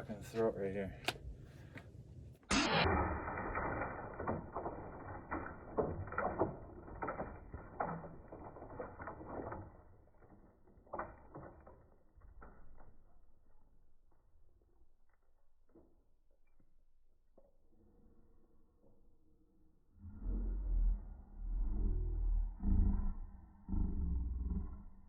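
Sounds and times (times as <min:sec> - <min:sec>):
airsoft grenade burst: 0:02.5 - 0:06.8
rapid irregular clattering: 0:02.8 - 0:12.1.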